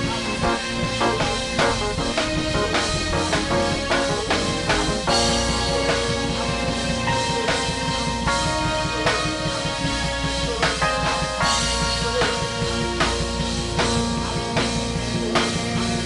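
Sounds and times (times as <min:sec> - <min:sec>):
drum kit beat: 0:00.0 - 0:16.0
live band music: 0:00.0 - 0:16.0.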